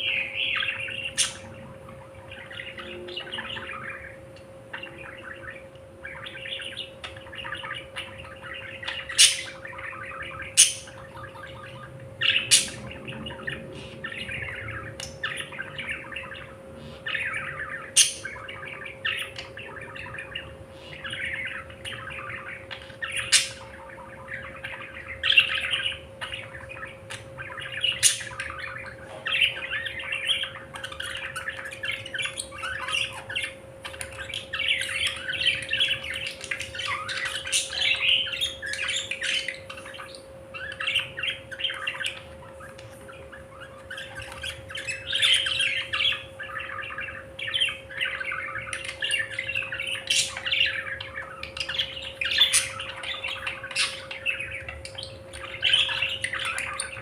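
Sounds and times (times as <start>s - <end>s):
budgerigars chattering and squawking: 0.0s - 57.0s
steady low hum: 0.0s - 57.0s.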